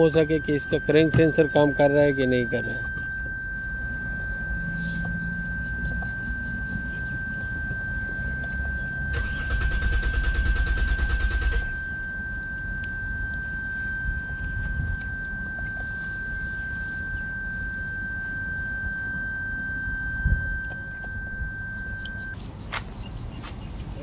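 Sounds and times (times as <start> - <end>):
starter motor cranking engine: 8.6 - 12.0.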